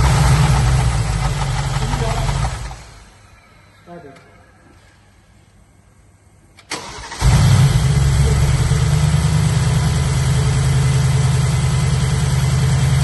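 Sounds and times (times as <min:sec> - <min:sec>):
engine starting and idling: 0:00.0 - 0:03.1, 0:06.6 - 0:13.0.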